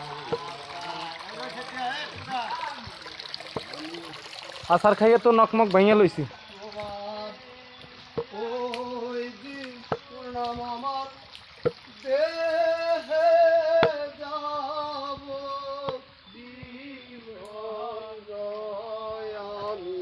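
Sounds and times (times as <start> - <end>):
person singing long notes: 6.6 - 11.2, 12.0 - 20.0.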